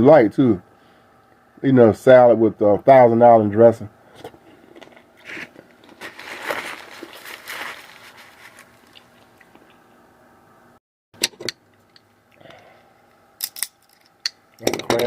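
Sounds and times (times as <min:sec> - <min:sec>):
crunching and chewing: 0:04.5 - 0:09.9.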